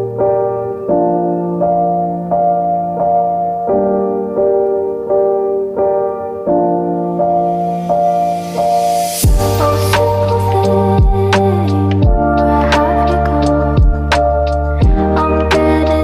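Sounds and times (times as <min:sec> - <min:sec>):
slow piano notes: 0:00.0 - 0:16.0.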